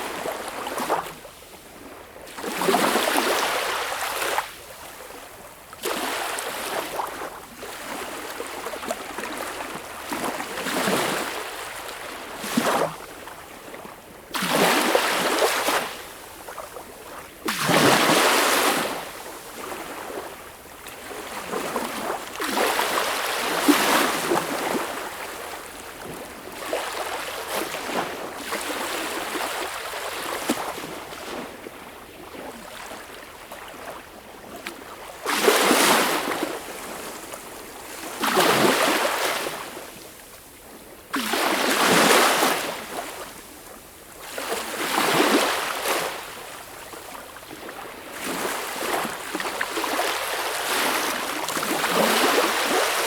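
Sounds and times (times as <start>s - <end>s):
sea waves breaking on shore: 44.2s - 53.0s.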